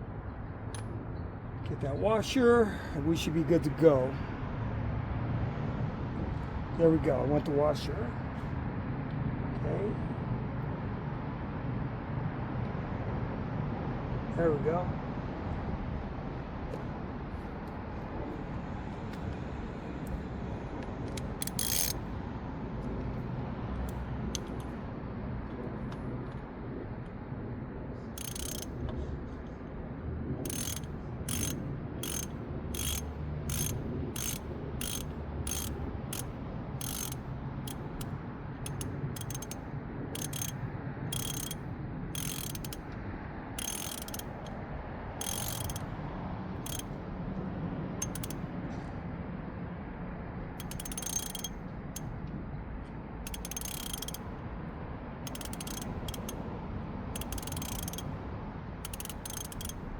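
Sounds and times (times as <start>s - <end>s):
ratchet wrench clicking: 21.1s - 22.0s, 23.8s - 24.7s, 28.2s - 29.0s, 30.4s - 43.0s, 43.6s - 45.9s, 46.6s - 47.0s, 48.0s - 48.5s, 50.6s - 52.1s, 53.3s - 54.4s, 55.3s - 56.5s, 57.1s - 58.2s, 58.8s - 59.9s.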